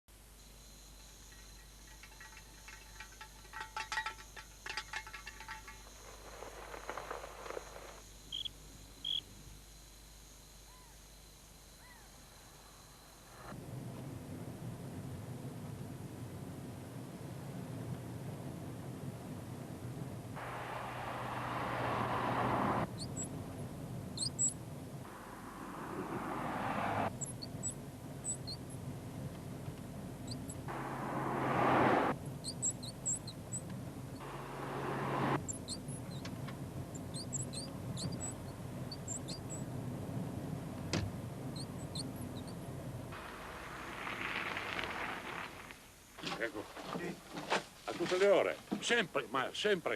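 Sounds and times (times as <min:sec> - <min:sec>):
car running noise: 0:13.5 - 0:48.2
high-pitched car squeaks: 0:20.4 - 0:23.3, 0:24.2 - 0:28.7, 0:30.2 - 0:36.3, 0:36.9 - 0:39.6.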